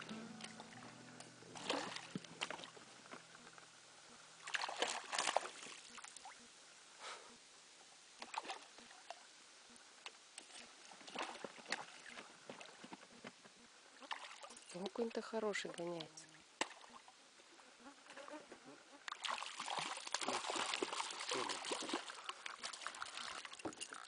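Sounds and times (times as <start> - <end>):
background music: 0.0 - 3.3
water splashing around boat: 1.5 - 2.9, 4.4 - 6.3, 19.1 - 24.0.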